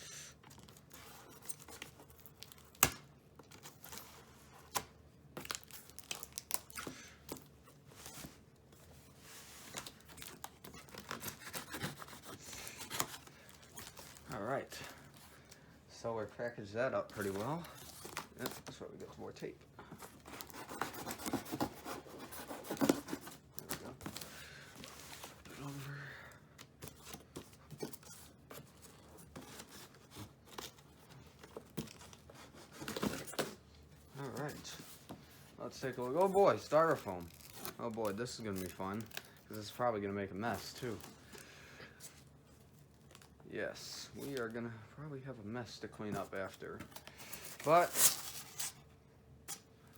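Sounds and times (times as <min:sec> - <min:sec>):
packing tape ripping: 0:00.5 - 0:08.3, 0:09.7 - 0:14.4, 0:36.2 - 0:39.4, 0:46.9 - 0:48.8
cardboard scraping and crinkling: 0:03.4 - 0:15.5, 0:17.0 - 0:25.9, 0:26.8 - 0:41.4, 0:45.7 - 0:48.9.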